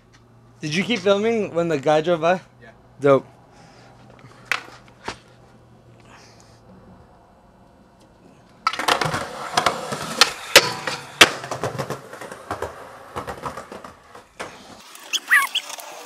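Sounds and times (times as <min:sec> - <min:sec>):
skateboard rolling on pavement: 0:07.1 - 0:16.0
skateboard clacks: 0:08.6 - 0:14.9.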